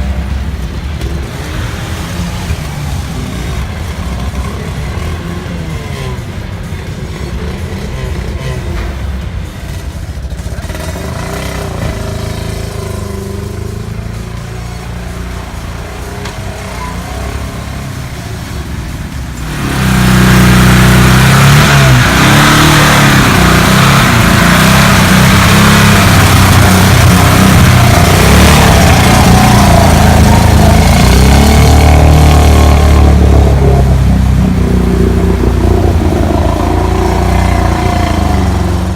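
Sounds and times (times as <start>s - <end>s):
car engine revving: 0.0s - 38.9s
heavy rushing noise: 0.0s - 38.9s.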